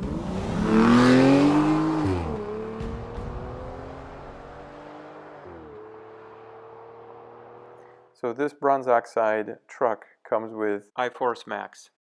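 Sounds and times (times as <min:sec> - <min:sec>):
vehicle engine revving: 0:00.0 - 0:08.0.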